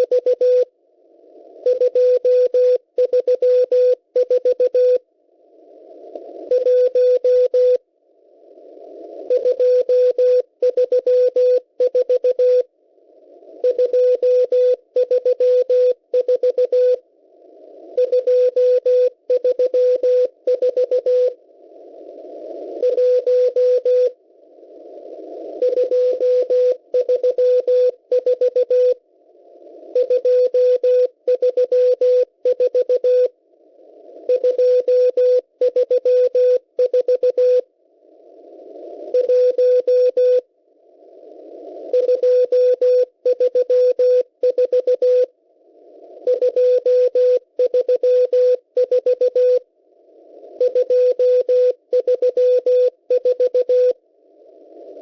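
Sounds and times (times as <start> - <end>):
morse code tone: 0.0 - 0.7, 1.6 - 5.0, 6.5 - 7.8, 9.3 - 12.7, 13.6 - 17.0, 18.0 - 21.4, 22.8 - 24.2, 25.6 - 29.0, 30.0 - 33.3, 34.3 - 37.6, 39.1 - 40.5, 41.9 - 45.3, 46.2 - 49.6, 50.6 - 54.0
radio static: 17.4 - 35.2.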